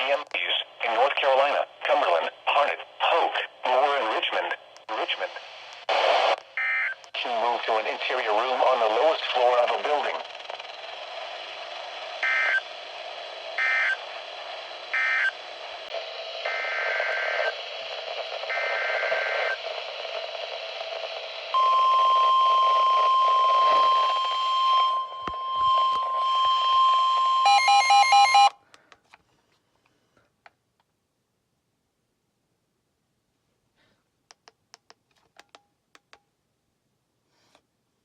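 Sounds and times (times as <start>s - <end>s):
radio static hiss: 0.0s - 6.4s, 7.1s - 24.4s
steady alarm tone: 21.5s - 28.5s
rapid beeping at several pitches: 25.8s - 28.5s.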